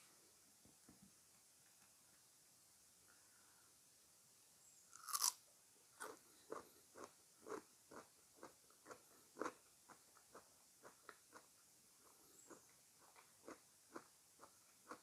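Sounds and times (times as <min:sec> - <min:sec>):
crunchy bite into fruit: 0:04.9 - 0:05.4
chewing: 0:06.0 - 0:15.0.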